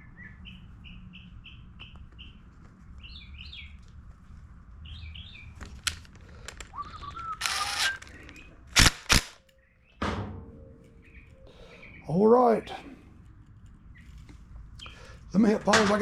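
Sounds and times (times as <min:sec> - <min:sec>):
small bird chirping: 0:03.0 - 0:03.8, 0:04.8 - 0:05.6, 0:13.8 - 0:15.2
clicks of parts being handled: 0:05.6 - 0:09.6.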